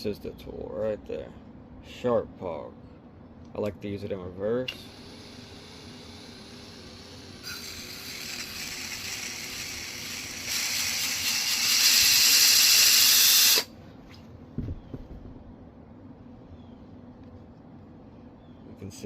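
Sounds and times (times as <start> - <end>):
multi-tool blade grinding on sharpener: 4.7 - 13.7.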